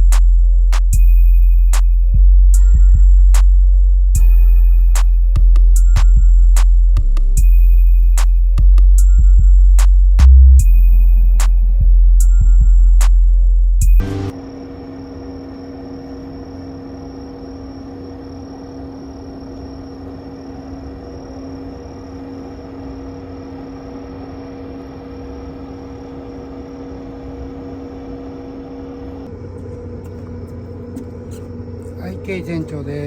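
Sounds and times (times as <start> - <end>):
boat engine running: 28.6 - 33.0.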